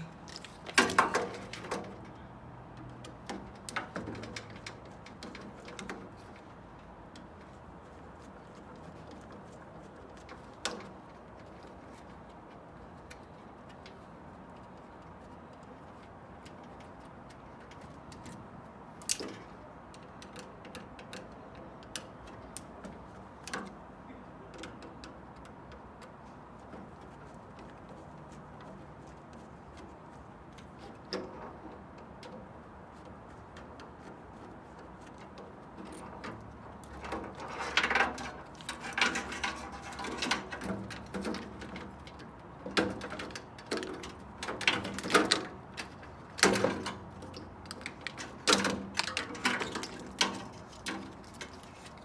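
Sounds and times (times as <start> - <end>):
metal parts and tools clattering: 19.0 - 19.4, 36.8 - 38.3.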